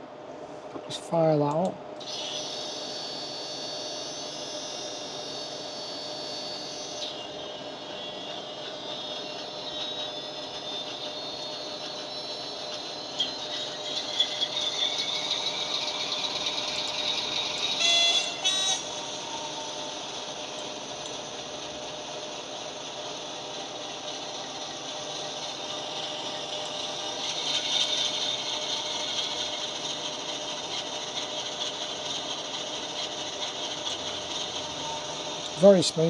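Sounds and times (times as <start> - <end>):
model locomotive horn blasts: 2.1 - 8.5, 15.6 - 21.4
diesel engine running: 7.2 - 36.0.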